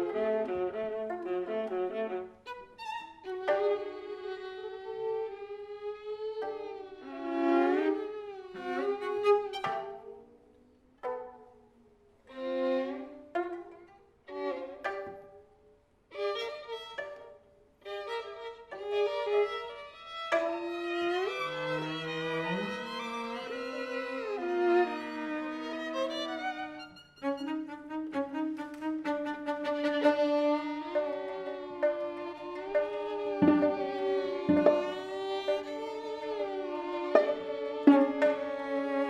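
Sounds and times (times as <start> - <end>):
instrumental music with sliding notes: 16.1 - 39.0
lower instrumental line: 30.9 - 38.7.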